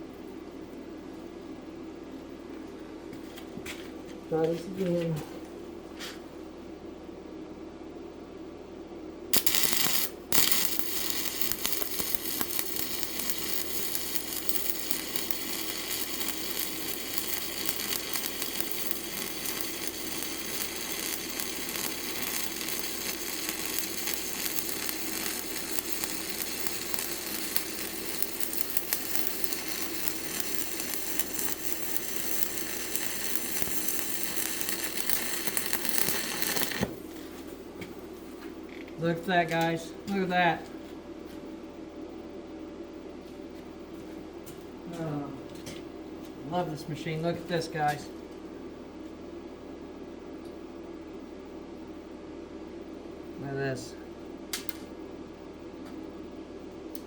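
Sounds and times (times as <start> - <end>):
welding arc crackling sizzle: 9.3 - 38.0, 46.5 - 48.1, 54.5 - 54.9.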